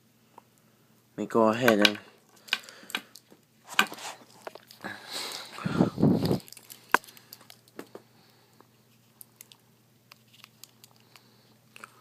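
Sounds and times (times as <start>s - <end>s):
pocket knife handling rustle: 2.3s - 7.9s.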